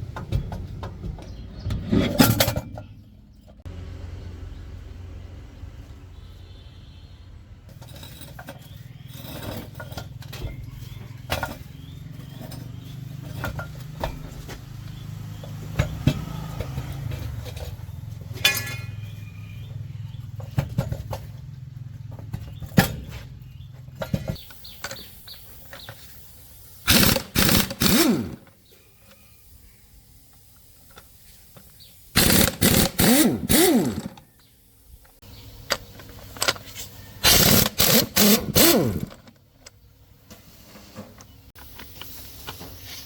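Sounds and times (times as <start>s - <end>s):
metal clanks and knocks: 0.0s - 3.6s, 15.8s - 19.2s.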